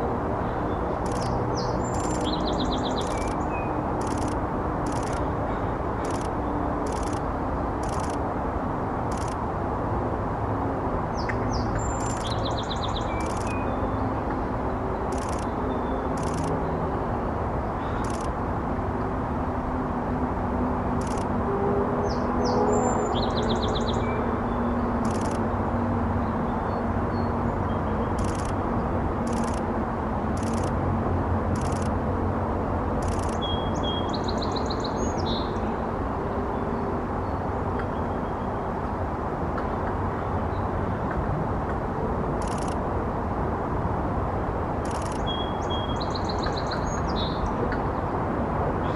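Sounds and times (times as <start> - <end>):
distant traffic rumble: 0.0 - 48.9
songbird singing: 0.7 - 8.2, 11.1 - 16.8, 17.7 - 18.4, 22.0 - 25.4, 26.2 - 28.6, 29.2 - 29.6, 30.4 - 30.7, 33.0 - 35.8, 44.8 - 48.0
small birds calling: 1.0 - 7.2, 11.2 - 13.8, 15.1 - 16.5, 17.8 - 18.3.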